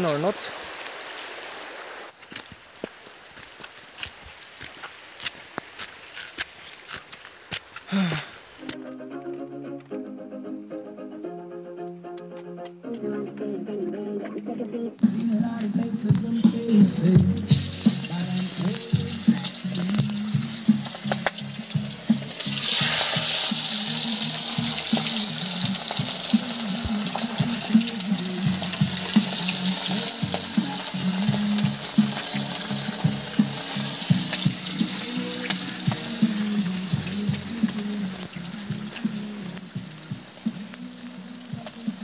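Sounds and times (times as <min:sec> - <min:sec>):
background music with bass line: 0:08.7 - 0:42.0
food sizzling: 0:15.1 - 0:42.0.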